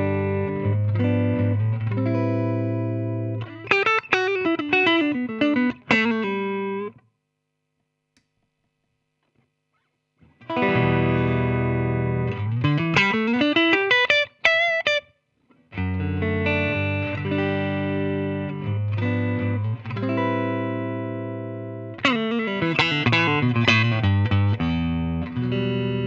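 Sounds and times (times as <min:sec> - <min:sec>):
electric guitar chords and notes: 0:00.0 - 0:07.0, 0:10.2 - 0:26.0.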